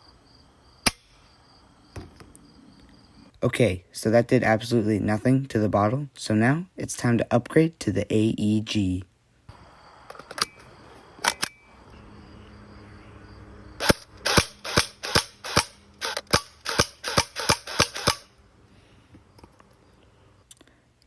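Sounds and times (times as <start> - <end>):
airsoft rifle firing: 13.8 - 18.3.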